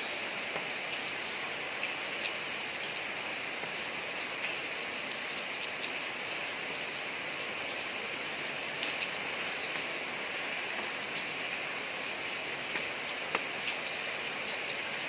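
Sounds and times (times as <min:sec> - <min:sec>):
rain hiss on a street: 0:00.0 - 0:15.0
raindrop ticks: 0:08.8 - 0:10.0, 0:12.6 - 0:15.0.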